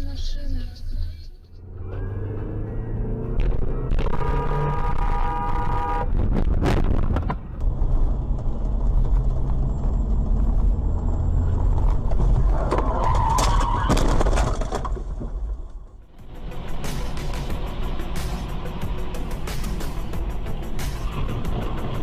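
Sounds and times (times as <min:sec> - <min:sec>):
engine and road rumble: 0:00.0 - 0:22.0
car horn chord: 0:04.7 - 0:06.1.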